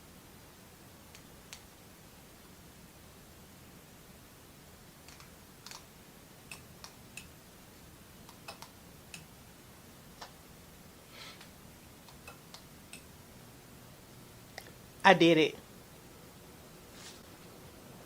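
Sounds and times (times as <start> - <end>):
light clicks and ticks: 8.3 - 9.3.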